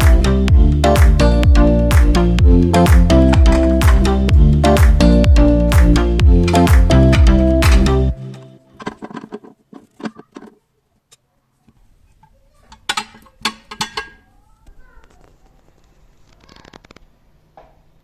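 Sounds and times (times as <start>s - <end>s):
household items clicking and knocking: 8.7s - 10.7s, 12.2s - 14.3s.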